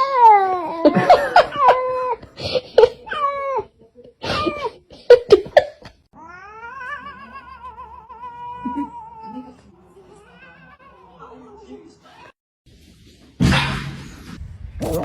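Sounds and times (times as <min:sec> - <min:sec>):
cat meowing: 0:06.2 - 0:09.4
cat yowling: 0:06.2 - 0:09.5.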